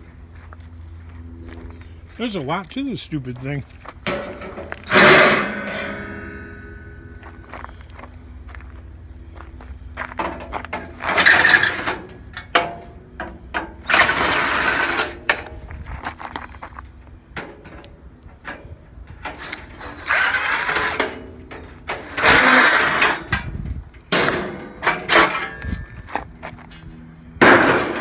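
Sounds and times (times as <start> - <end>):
metal parts knocking and rattling: 4.0 - 7.3, 10.2 - 15.6, 17.4 - 26.1, 26.7 - 28.0
handheld power tool bursts: 10.9 - 12.7, 13.7 - 15.4, 19.2 - 23.4.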